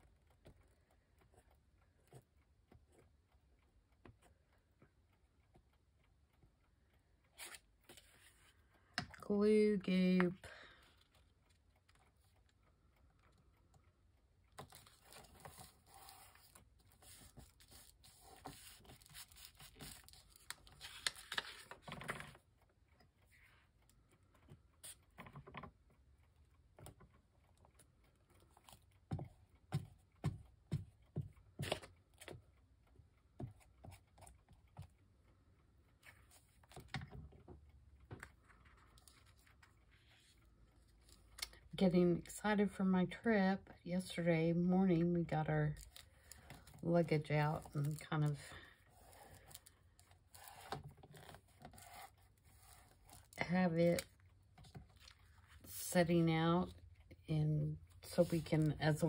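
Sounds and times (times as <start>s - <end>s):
paper rustling and scraping: 14.7s - 22.4s, 47.4s - 55.9s, 58.0s - 59.0s.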